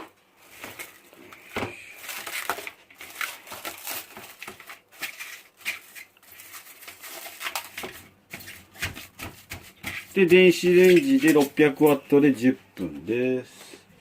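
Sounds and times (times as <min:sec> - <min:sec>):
cling wrap crinkling: 0:00.0 - 0:08.0.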